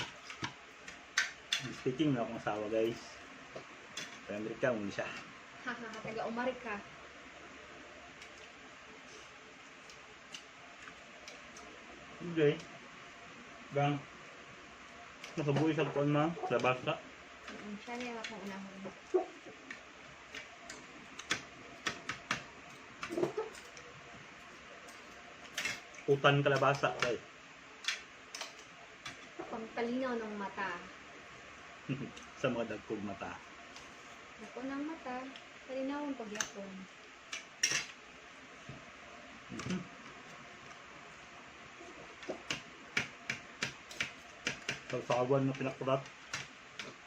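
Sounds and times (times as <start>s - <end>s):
faint steady hiss: 0.0s - 47.0s
cutlery clicking on plates: 37.3s - 38.0s.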